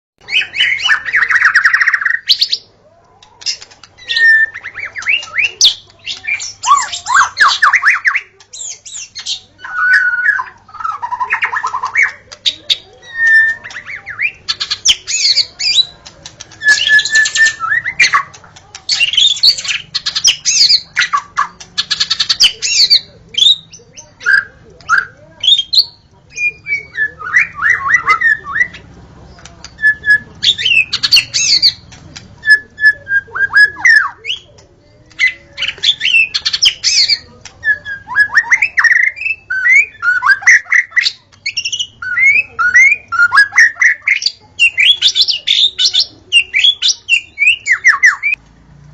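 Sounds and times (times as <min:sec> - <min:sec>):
bird singing whistled song: 0:04.0 - 0:12.2, 0:13.0 - 0:15.9, 0:16.6 - 0:18.3, 0:18.9 - 0:28.8, 0:35.2 - 0:48.4.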